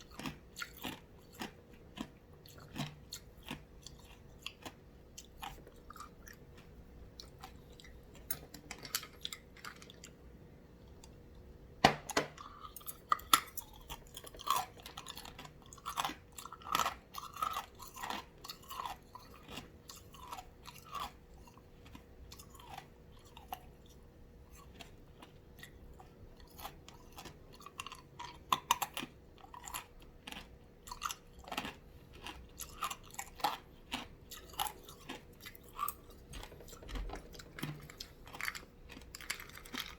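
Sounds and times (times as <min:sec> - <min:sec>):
ice crunching between teeth: 0:26.4 - 0:39.9.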